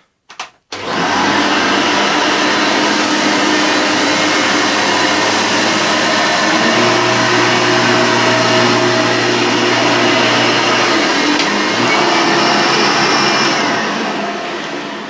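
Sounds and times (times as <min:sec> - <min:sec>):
vacuum cleaner motor drone: 0:00.8 - 0:15.0.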